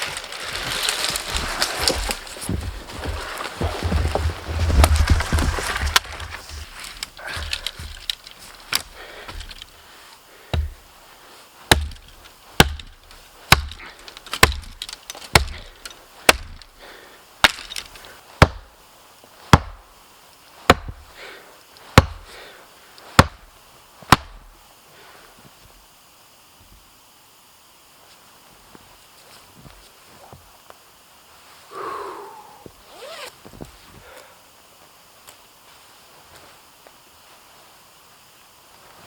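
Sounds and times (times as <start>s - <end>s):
blade chopping into wood: 3.8s - 9.7s, 10.6s - 10.9s, 11.7s - 16.7s, 17.4s - 18.7s, 19.5s - 19.8s, 20.7s - 21.0s, 22.0s - 22.3s, 23.2s - 23.5s.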